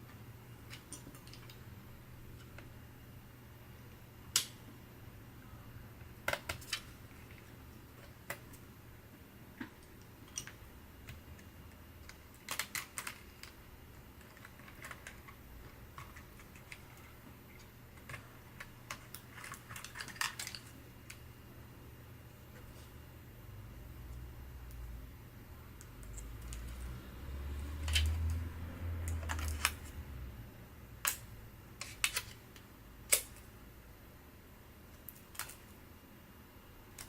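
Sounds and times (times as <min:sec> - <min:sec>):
small parts and tools clicking: 0:09.6 - 0:13.6.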